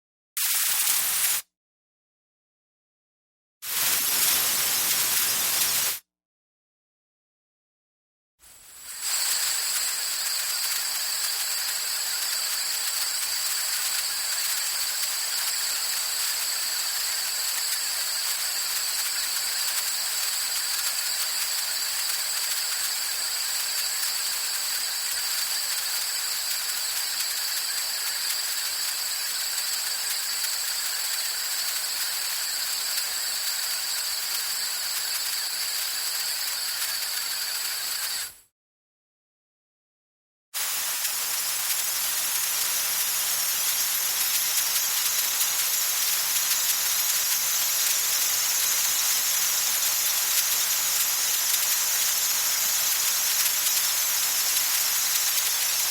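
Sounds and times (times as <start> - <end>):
compressed air hissing: 3.7 - 6.0.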